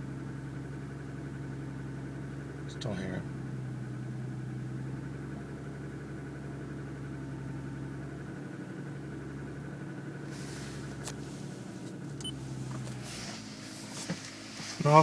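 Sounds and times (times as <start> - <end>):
car engine idling with piston slap: 6.8 - 15.0.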